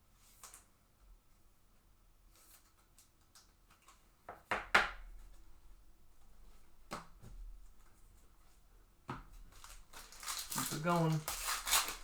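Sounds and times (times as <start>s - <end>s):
cards and wrappers rustling: 9.5s - 12.0s.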